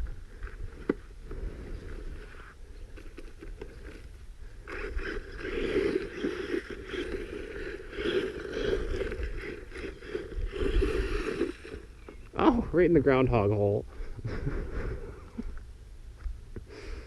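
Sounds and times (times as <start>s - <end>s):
tires churning soil: 0.0s - 14.3s
electric motor whirring: 3.1s - 12.5s.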